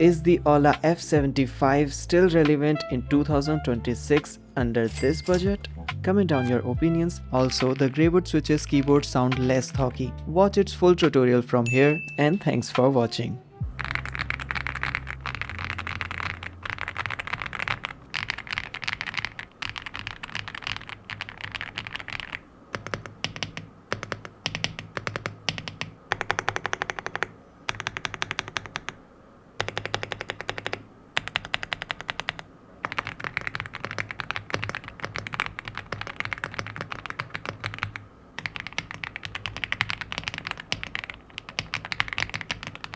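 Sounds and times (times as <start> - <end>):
mechanical keyboard typing: 7.5 - 9.9, 13.7 - 29.0, 29.6 - 42.9.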